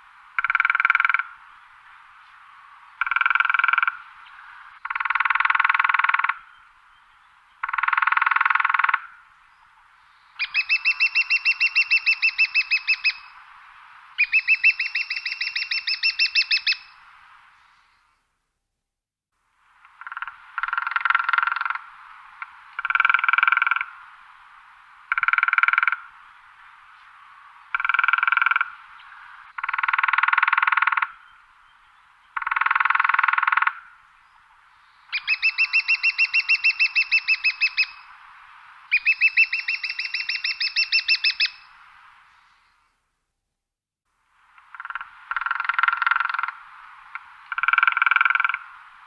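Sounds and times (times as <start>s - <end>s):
woodpecker drumming on wood: 0.4s - 1.3s, 3.0s - 4.0s, 7.6s - 9.1s, 19.9s - 21.8s, 25.1s - 26.0s, 27.7s - 28.8s, 29.5s - 31.2s, 32.4s - 33.8s, 44.6s - 48.7s.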